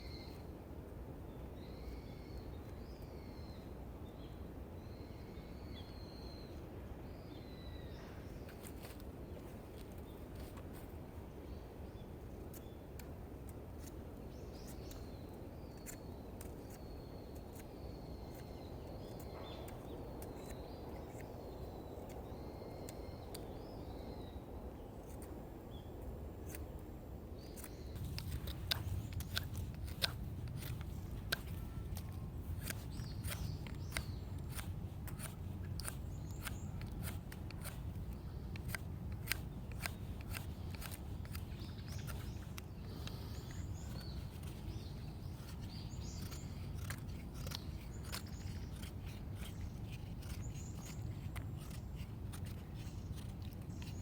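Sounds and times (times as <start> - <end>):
small birds chirping: 0.0 - 54.0
sharp clicks and crackles: 27.4 - 54.0.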